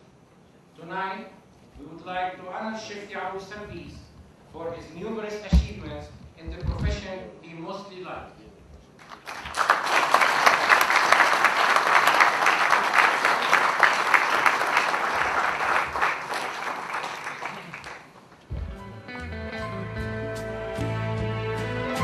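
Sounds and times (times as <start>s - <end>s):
audience applauding: 9.0s - 18.3s
soft guitar music: 18.5s - 22.0s.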